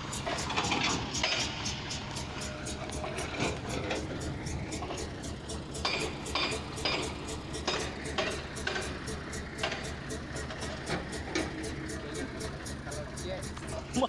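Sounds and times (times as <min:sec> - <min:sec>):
heavy machinery rumbling: 0:00.0 - 0:14.0
sharp metallic clanks: 0:00.0 - 0:14.0.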